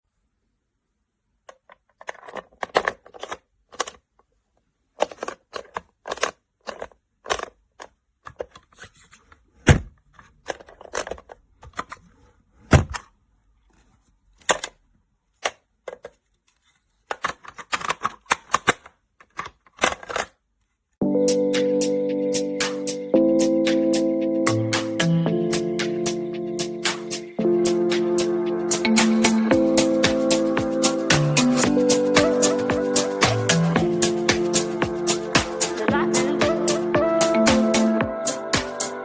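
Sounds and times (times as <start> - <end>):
small safe clicking and rattling: 1.5 - 4.1, 4.9 - 8.8.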